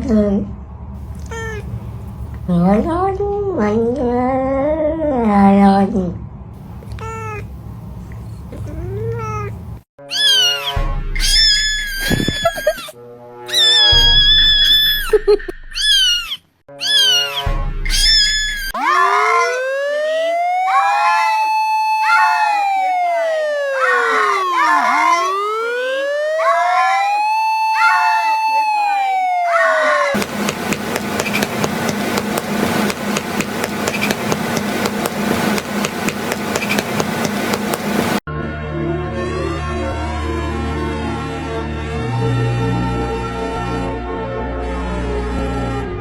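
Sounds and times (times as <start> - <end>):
cat meowing: 1.1 - 2.9, 6.7 - 12.9, 13.5 - 14.2, 15.8 - 19.6, 20.7 - 25.5, 26.4 - 30.2
rising siren-like wail: 1.1 - 2.9, 6.6 - 9.5, 18.7 - 38.2
low steady hum: 30.2 - 38.2
rapid sharp knocks: 30.2 - 38.2.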